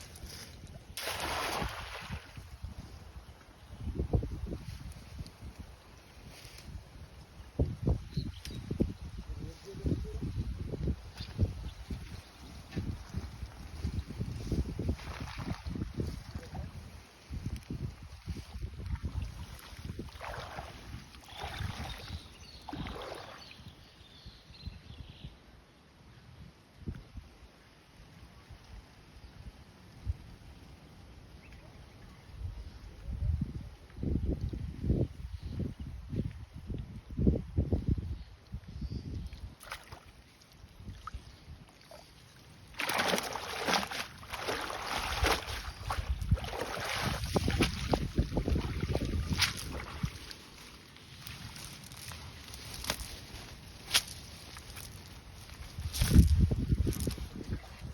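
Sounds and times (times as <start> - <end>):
wind rumble on microphone: 0.0 - 25.4, 31.5 - 39.7, 43.8 - 50.4, 51.2 - 57.9
water splashing: 0.9 - 2.6, 18.5 - 23.6, 39.5 - 56.2.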